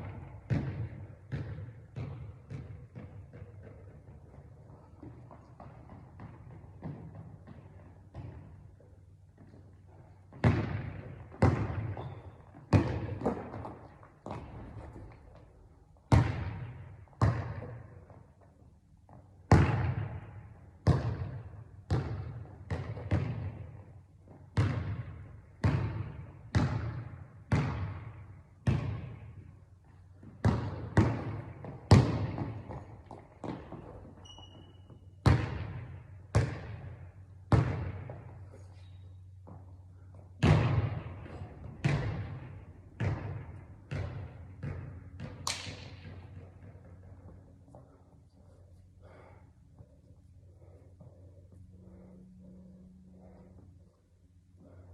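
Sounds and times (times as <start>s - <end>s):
basketball bouncing on hard floor: 0.0s - 8.6s, 10.3s - 15.4s, 16.1s - 17.9s, 19.1s - 20.2s, 20.8s - 23.6s, 24.6s - 29.2s, 30.2s - 38.3s, 40.4s - 47.8s.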